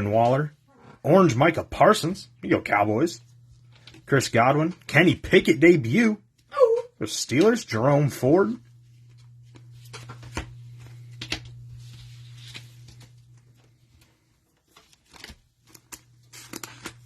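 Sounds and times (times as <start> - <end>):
wrapper rustling: 11.0 - 17.0
cards and wrappers clicking: 14.6 - 17.0.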